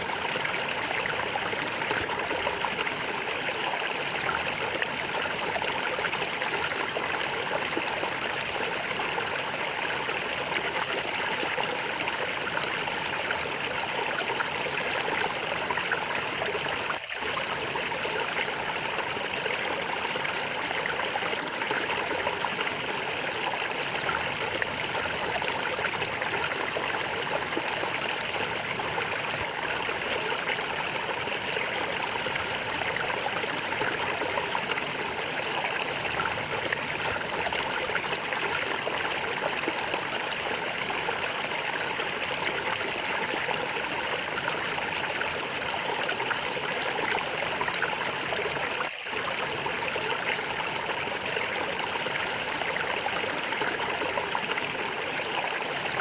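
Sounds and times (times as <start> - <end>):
water gurgling and trickling: 0.0 - 56.0.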